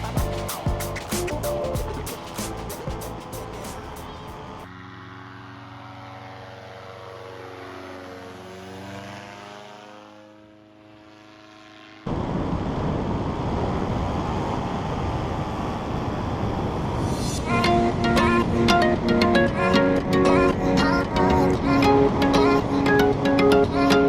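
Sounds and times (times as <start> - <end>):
paraglider propeller engine droning: 0.0 - 24.0
wind noise: 12.1 - 19.8.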